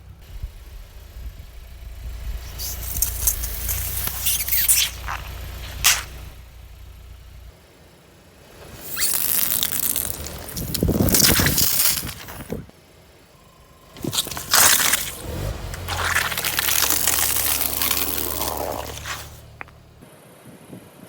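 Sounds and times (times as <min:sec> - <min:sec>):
car engine humming: 0:00.0 - 0:20.0
loud hissing crackling noise: 0:02.0 - 0:07.2, 0:08.4 - 0:12.6, 0:13.3 - 0:20.0
sharp crack: 0:02.4 - 0:07.5, 0:13.4 - 0:20.0
tyre crushing things: 0:08.8 - 0:12.6, 0:13.9 - 0:19.9.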